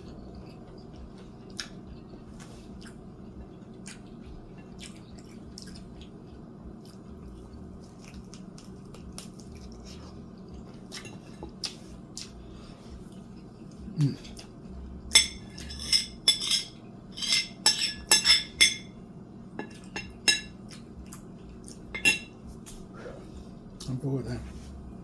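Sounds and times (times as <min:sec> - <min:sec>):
chewing with wet mouth clicks: 0:00.0 - 0:12.4, 0:13.0 - 0:14.7, 0:19.7 - 0:21.9
steady low hum: 0:00.0 - 0:25.0.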